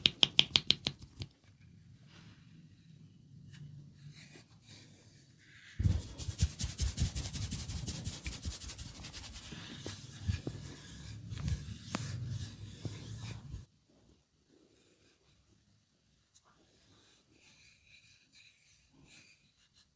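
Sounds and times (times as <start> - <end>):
hands rubbing skin: 5.8 - 13.3.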